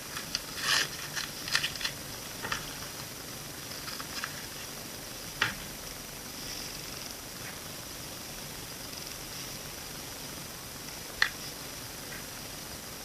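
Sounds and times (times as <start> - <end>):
packaging clicks and crinkles: 0.2 - 2.7.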